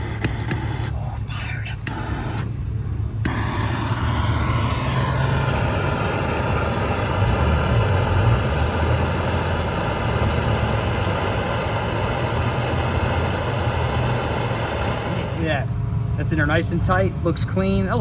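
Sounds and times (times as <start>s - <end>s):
soldering torch hissing: 0.0s - 1.1s, 1.8s - 2.6s, 3.2s - 15.7s
low hum: 0.0s - 16.3s.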